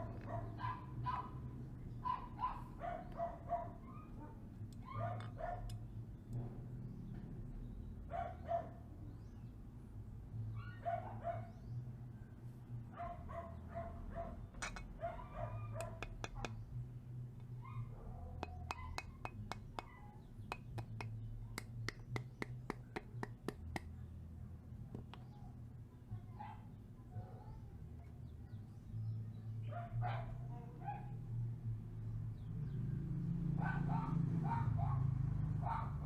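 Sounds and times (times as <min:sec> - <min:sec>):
dog barking: 0:00.0 - 0:05.8, 0:08.1 - 0:08.8, 0:10.6 - 0:11.6, 0:12.9 - 0:16.6, 0:17.6 - 0:21.1, 0:26.3 - 0:27.6, 0:29.6 - 0:31.2, 0:33.6 - 0:36.0.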